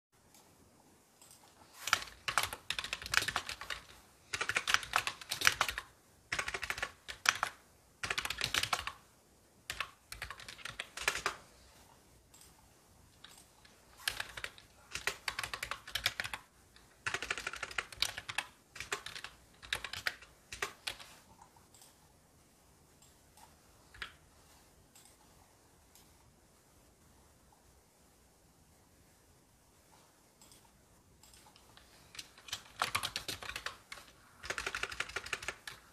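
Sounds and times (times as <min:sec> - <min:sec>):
typing on computer keyboard: 0:01.2 - 0:09.1, 0:09.7 - 0:11.4, 0:13.2 - 0:22.0, 0:23.0 - 0:24.2, 0:30.4 - 0:35.9.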